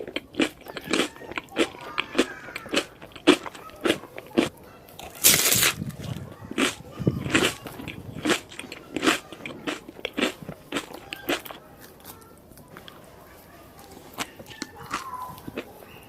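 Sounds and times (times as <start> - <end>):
sharp crunches: 0.0 - 11.9
person chewing food: 0.0 - 13.0, 13.9 - 16.0.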